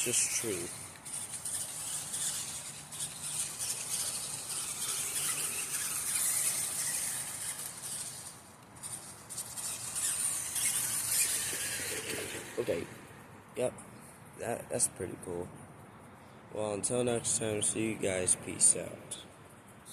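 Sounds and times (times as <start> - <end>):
rc truck motor whirring: 0.0 - 13.3.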